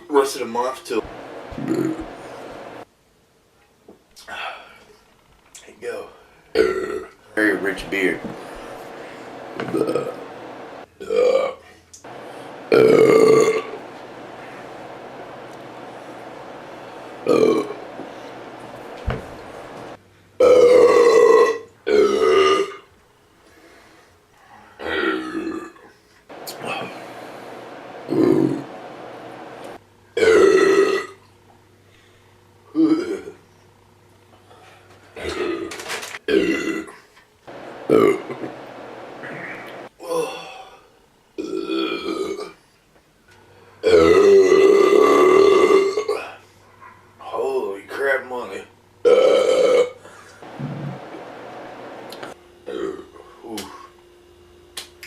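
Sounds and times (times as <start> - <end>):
man belching: 6.6 - 7.2, 9.6 - 10.2, 11.0 - 11.6, 12.7 - 13.8, 17.3 - 17.8, 20.4 - 22.8, 24.8 - 25.8, 30.2 - 31.2, 32.7 - 33.4, 35.2 - 35.7, 36.3 - 37.0, 37.9 - 38.4, 41.4 - 42.6, 43.8 - 46.4, 49.1 - 51.0, 52.7 - 53.2
man burping: 6.6 - 7.2, 9.6 - 10.2, 11.0 - 11.6, 12.7 - 13.8, 20.4 - 22.8, 24.8 - 25.8, 30.2 - 31.2, 32.7 - 33.4, 35.2 - 35.7, 36.3 - 37.0, 37.9 - 38.4, 41.4 - 42.6, 43.8 - 46.4, 49.1 - 51.0, 52.7 - 53.2.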